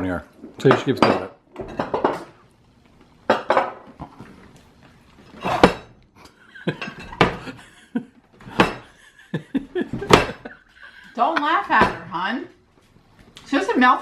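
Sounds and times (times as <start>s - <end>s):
dishes and cutlery clinking: 0.4s - 2.4s, 3.2s - 4.4s, 5.2s - 7.7s, 8.3s - 9.1s, 9.8s - 12.1s.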